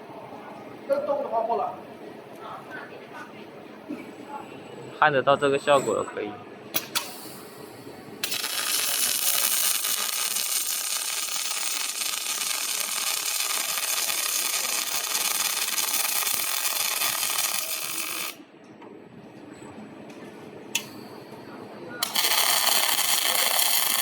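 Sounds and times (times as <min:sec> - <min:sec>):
welding arc crackling hiss: 0:08.2 - 0:18.4, 0:22.0 - 0:24.0.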